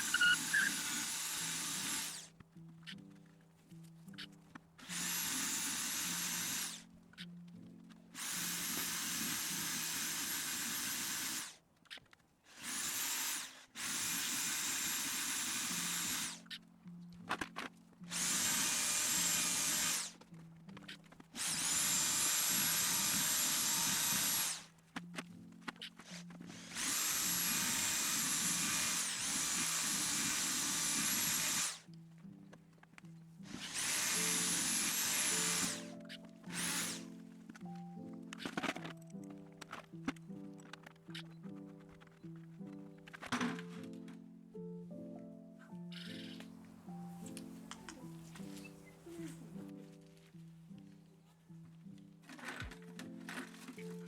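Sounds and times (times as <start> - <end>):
power drill whining: 0.0 - 2.3, 4.2 - 16.6, 17.2 - 31.9, 33.4 - 42.1, 52.2 - 54.0
background music with low notes: 0.0 - 12.4, 13.7 - 54.0.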